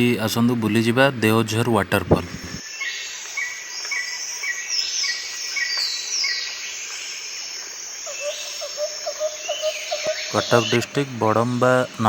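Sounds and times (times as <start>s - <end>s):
birds calling: 0.0s - 12.0s
insect hiss: 0.0s - 12.0s.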